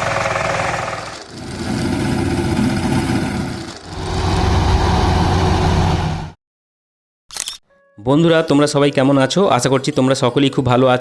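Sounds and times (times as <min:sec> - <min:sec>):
harvesting machine engine running: 0:00.0 - 0:06.3.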